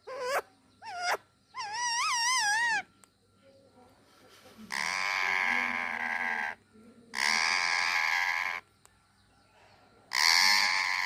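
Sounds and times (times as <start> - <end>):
parakeet harsh pulsing call: 0.0 - 2.9, 4.7 - 8.7, 10.1 - 11.0.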